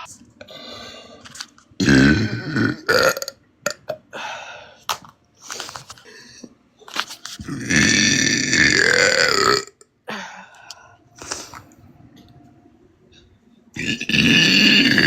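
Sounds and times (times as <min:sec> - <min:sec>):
woman burping: 0:01.8 - 0:04.0, 0:13.8 - 0:15.0.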